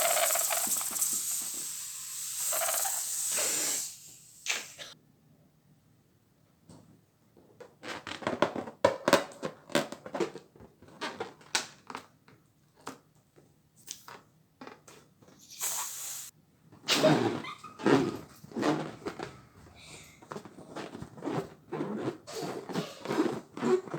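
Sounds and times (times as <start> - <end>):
water balloons popping: 0.0 - 3.9
short hiss: 0.0 - 5.0, 15.5 - 16.3.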